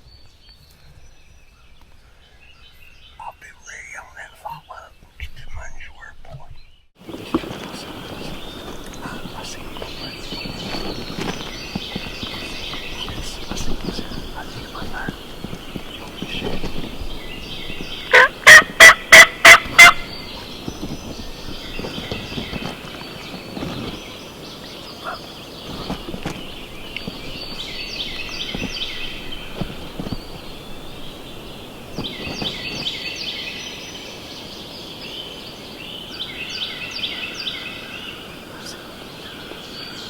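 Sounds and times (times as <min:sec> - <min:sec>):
faint songbirds singing: 0:00.0 - 0:40.0
turkey gobbling: 0:18.1 - 0:20.1.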